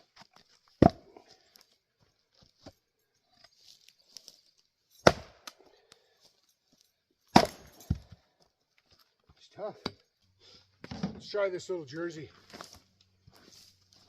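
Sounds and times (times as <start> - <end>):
axe chopping wood: 0.7 - 1.2, 5.0 - 5.6, 7.3 - 8.2.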